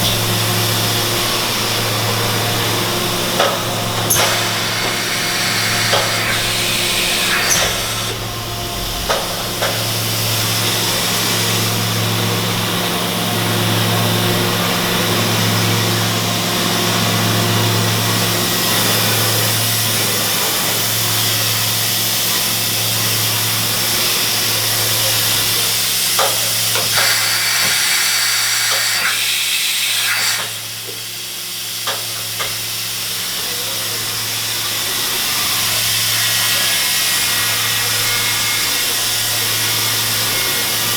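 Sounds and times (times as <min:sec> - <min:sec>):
high hiss: 0:00.0 - 0:12.4
machine low hum: 0:00.0 - 0:19.9.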